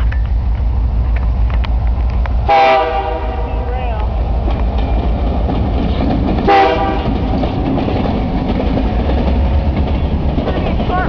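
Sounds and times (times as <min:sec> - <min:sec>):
diesel locomotive engine rumble: 0:00.0 - 0:11.0
train wheels on rails: 0:00.0 - 0:11.0
locomotive horn blast: 0:02.5 - 0:03.8, 0:06.5 - 0:07.2.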